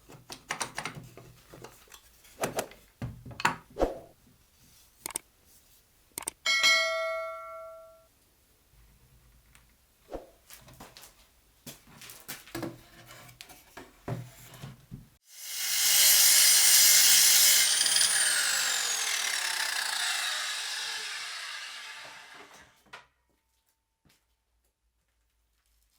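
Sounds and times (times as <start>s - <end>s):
circular saw cutting: 15.3s - 22.8s.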